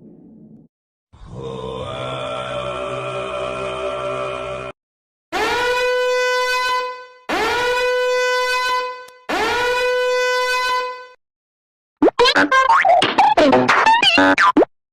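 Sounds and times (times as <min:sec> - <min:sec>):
horn blasts sliding up: 0:05.4 - 0:11.2.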